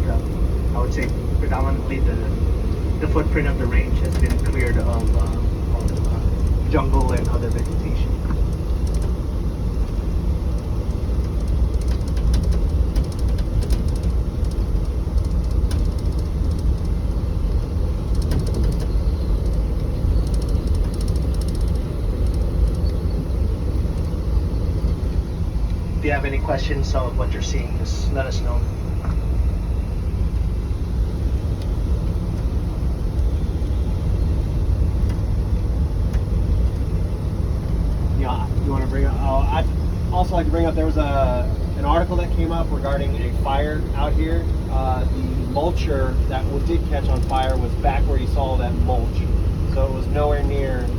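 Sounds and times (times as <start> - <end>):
vehicle driving rumble: 0.0 - 50.9
faint light rattles: 2.7 - 26.0.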